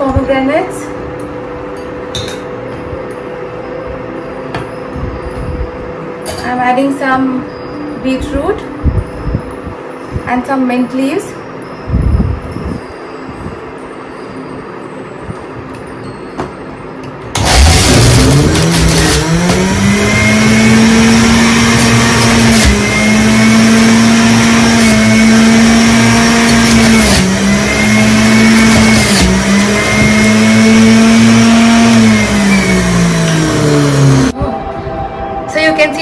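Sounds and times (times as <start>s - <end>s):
electric juicer motor whine: 17.3s - 34.4s.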